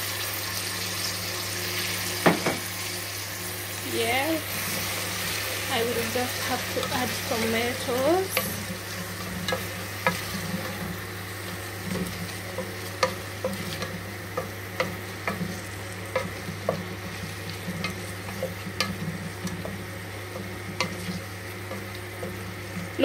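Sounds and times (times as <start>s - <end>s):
stew sizzling in a pot: 0.0s - 23.0s.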